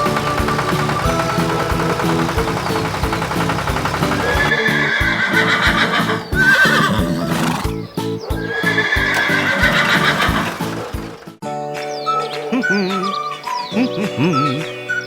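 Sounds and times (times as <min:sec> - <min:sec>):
upbeat background music: 0:00.0 - 0:15.0
horse whinnying: 0:04.3 - 0:10.7.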